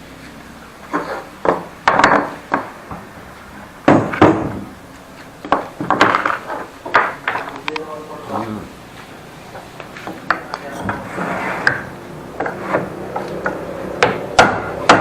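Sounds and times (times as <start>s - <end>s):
wooden timber knocking together: 0.8s - 4.8s, 5.4s - 7.8s, 12.4s - 15.0s.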